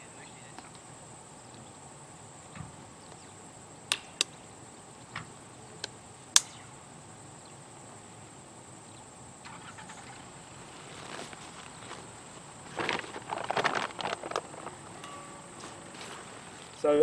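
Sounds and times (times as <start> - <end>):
plastic clips snapping onto post: 3.9 - 4.4.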